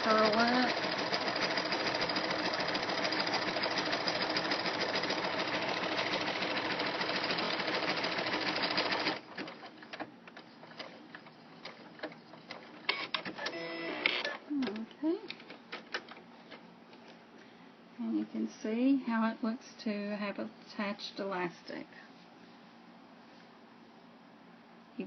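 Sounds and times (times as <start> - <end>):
sewing machine stitching: 0.0 - 11.0
faint clicks and handling noise: 14.6 - 17.5.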